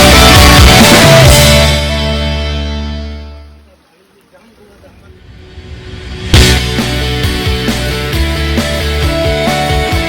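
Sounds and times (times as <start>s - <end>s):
rock music with drums: 0.0s - 3.3s, 5.3s - 10.0s.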